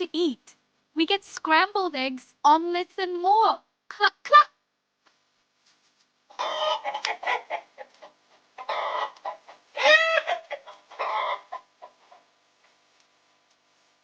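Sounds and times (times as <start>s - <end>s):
hen clucking: 6.3s - 12.2s
hen squawking: 6.4s - 7.7s, 8.6s - 11.6s.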